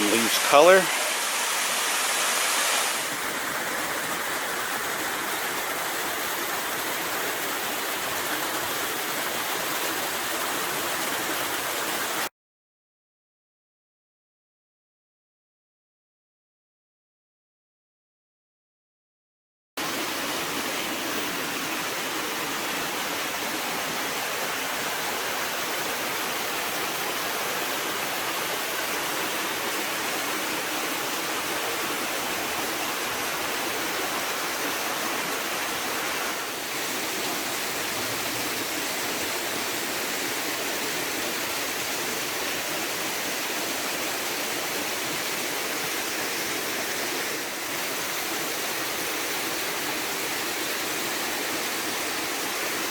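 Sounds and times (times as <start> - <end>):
flowing water rushing: 0.0 - 12.3, 19.8 - 52.9.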